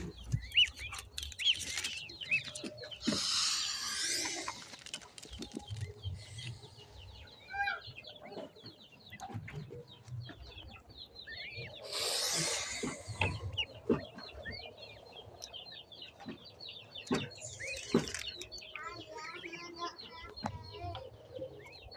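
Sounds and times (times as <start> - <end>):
rustling: 0.0 - 6.5
young birds peeping: 0.0 - 21.9.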